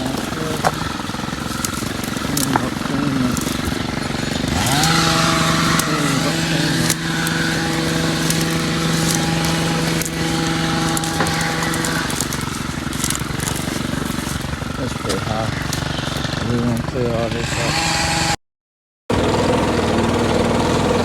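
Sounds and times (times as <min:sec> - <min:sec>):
small petrol engine revving: 0:00.0 - 0:18.4, 0:19.1 - 0:21.0.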